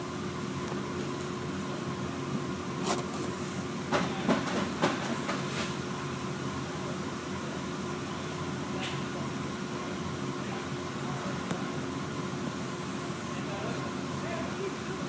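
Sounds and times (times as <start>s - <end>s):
machinery hum: 0.0s - 15.0s.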